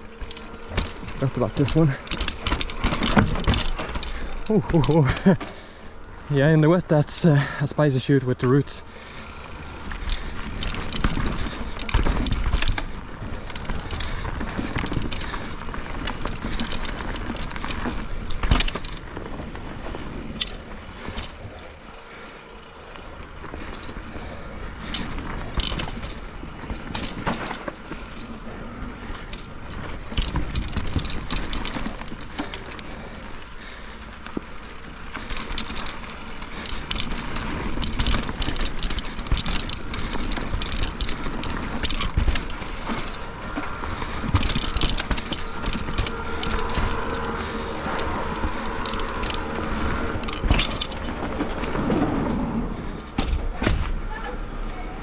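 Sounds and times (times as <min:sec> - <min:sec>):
bike tyres hissing on wet dirt: 0:00.0 - 0:52.9
wheels knocking on roots: 0:00.0 - 0:55.0.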